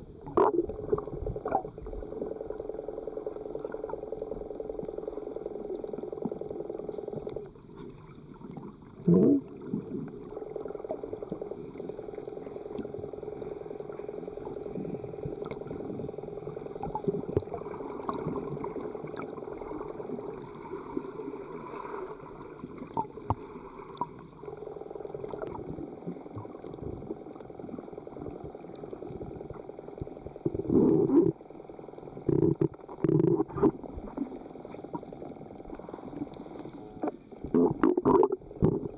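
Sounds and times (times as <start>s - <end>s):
faint clicks: 0.2s - 9.2s, 22.7s - 38.9s
gurgling bubble bursts: 9.0s - 10.3s, 37.4s - 38.9s
underwater water hiss: 11.8s - 32.3s, 33.8s - 37.5s.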